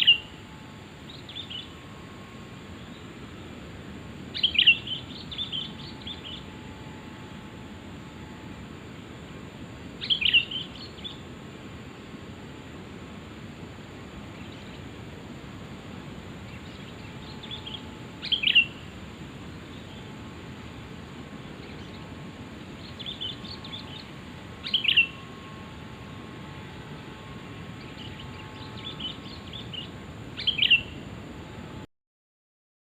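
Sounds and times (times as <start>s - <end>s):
bird calling: 0.0s - 3.2s, 4.3s - 7.4s, 10.0s - 11.3s, 16.4s - 20.2s, 21.3s - 31.1s
steady background hiss: 0.0s - 31.9s.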